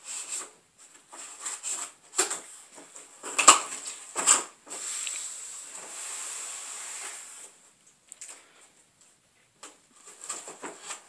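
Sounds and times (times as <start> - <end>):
cardboard rustling and tearing: 0.0 - 7.6, 9.9 - 11.0.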